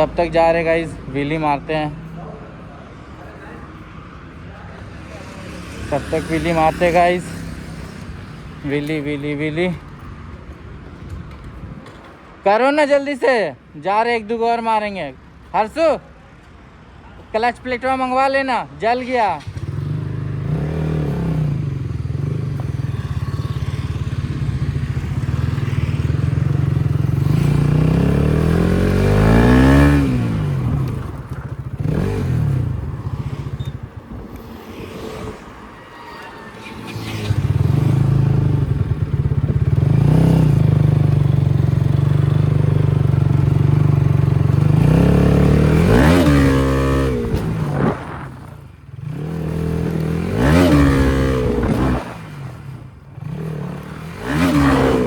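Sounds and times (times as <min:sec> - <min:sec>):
motorcycle engine revving: 0:05.0 - 0:09.8, 0:19.4 - 0:55.0.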